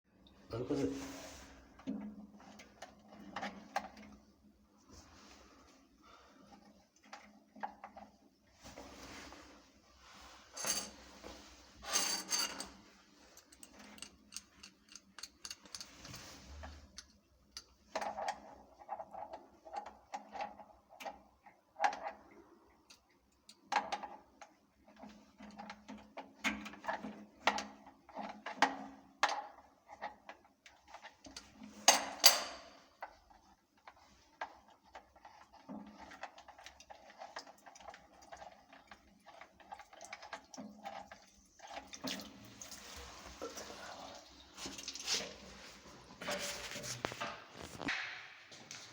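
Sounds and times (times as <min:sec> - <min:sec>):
tap fittings knocking and clattering: 0:13.4 - 0:16.2.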